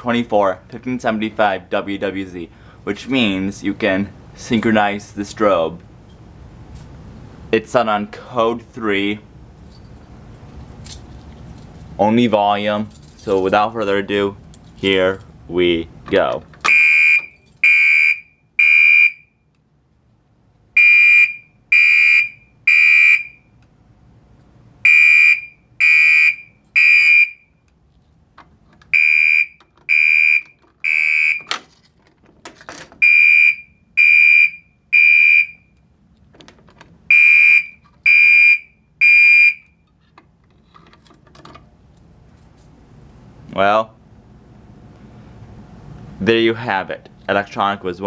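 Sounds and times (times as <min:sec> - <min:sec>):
electronic alarm horn beeping: 0:16.7 - 0:19.4, 0:20.8 - 0:23.5, 0:24.8 - 0:27.6, 0:28.9 - 0:31.5, 0:33.0 - 0:35.8, 0:37.1 - 0:39.8.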